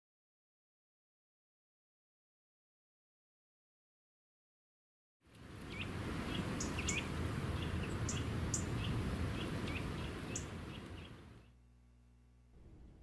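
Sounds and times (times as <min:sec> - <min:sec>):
small birds chirping: 0:05.6 - 0:11.6.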